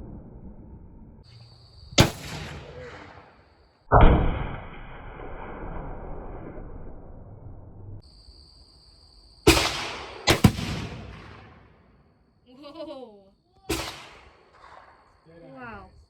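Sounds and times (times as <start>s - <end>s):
rifle shots: 2.0s - 4.8s, 9.5s - 12.0s, 13.7s - 15.2s.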